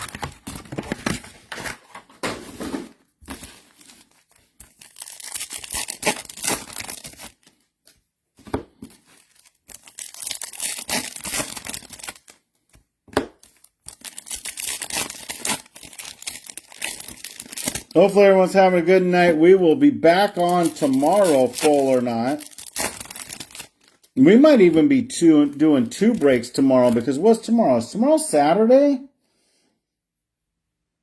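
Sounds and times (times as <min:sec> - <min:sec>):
card pack wrappers tearing: 0:00.0 - 0:02.0, 0:03.3 - 0:08.0, 0:08.9 - 0:18.2, 0:20.0 - 0:27.4.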